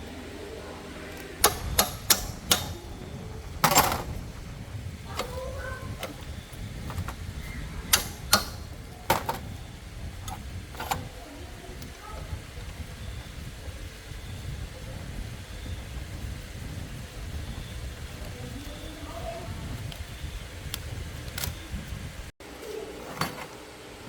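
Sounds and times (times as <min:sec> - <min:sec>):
hard objects clicking and knocking: 0:01.4 - 0:04.5, 0:05.1 - 0:11.2
scraping knock: 0:03.6 - 0:04.4, 0:07.9 - 0:09.5.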